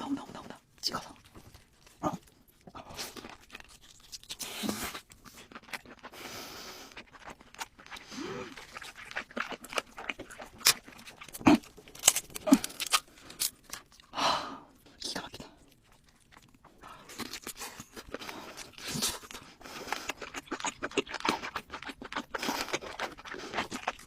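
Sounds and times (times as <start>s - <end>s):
crunching and chewing: 0.0s - 24.0s.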